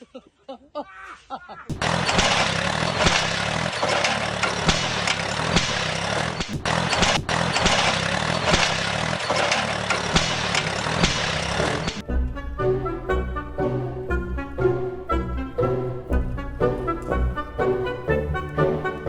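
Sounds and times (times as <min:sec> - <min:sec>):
motor running noisily: 0:01.7 - 0:12.0.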